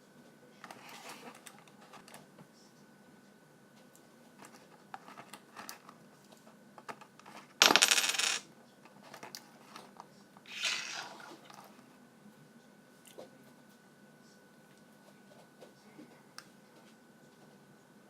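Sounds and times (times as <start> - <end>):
coin rattling in machine: 7.6 - 8.4.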